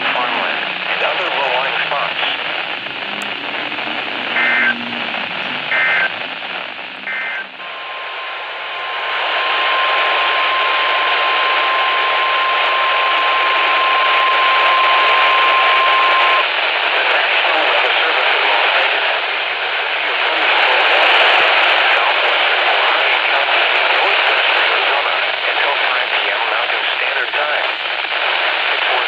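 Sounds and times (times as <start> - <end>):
steady emergency alert tone: 0.0 - 16.4
radio static hiss: 0.0 - 29.0
warbling digital data tones: 2.2 - 7.6.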